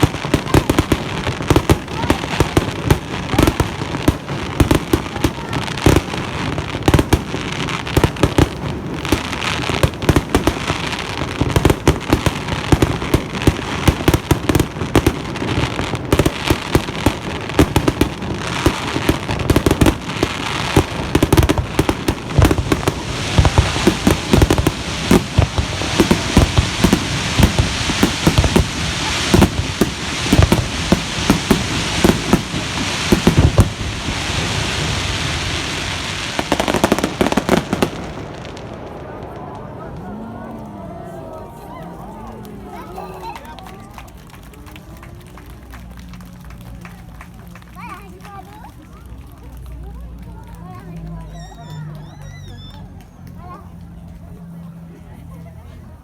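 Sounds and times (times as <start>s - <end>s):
fireworks bangs and booms: 0.0s - 40.1s
fireworks crackling: 0.0s - 56.0s.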